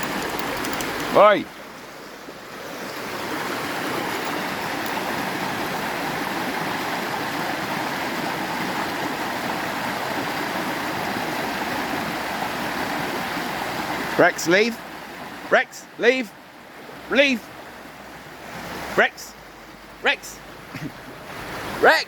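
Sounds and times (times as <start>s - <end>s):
river water rushing: 0.0s - 22.0s.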